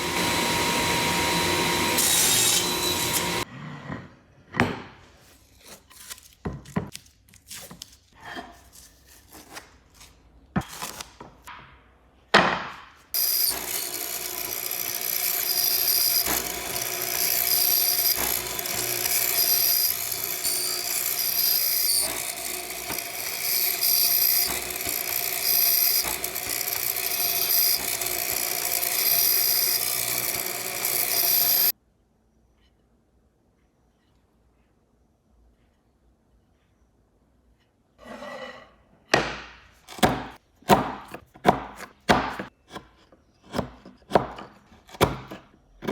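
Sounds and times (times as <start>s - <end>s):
power tool whining: 0.0s - 3.4s, 13.2s - 31.7s.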